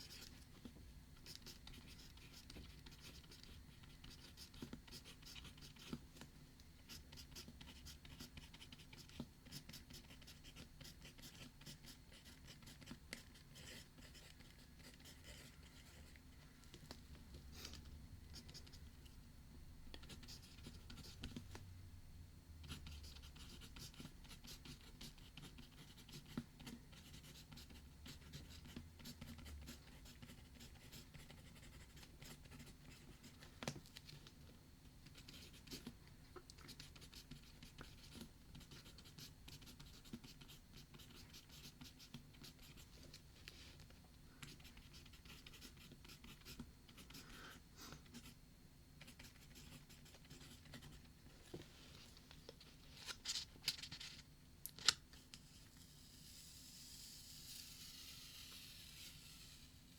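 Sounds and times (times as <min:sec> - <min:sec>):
low steady hum: 0:00.0 - 0:59.9
pen scratching on paper: 0:01.2 - 0:06.0, 0:06.9 - 0:16.1, 0:22.7 - 0:33.2, 0:44.6 - 0:47.3.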